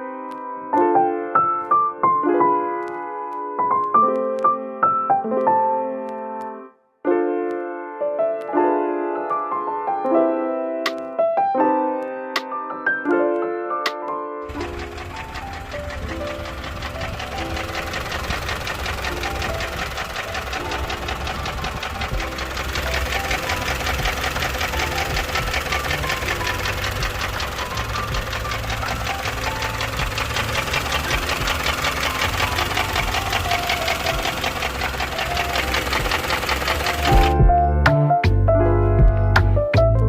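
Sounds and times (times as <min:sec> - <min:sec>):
fast rattling tap from engine: 0:14.5 - 0:37.4
car engine running: 0:14.5 - 0:37.6.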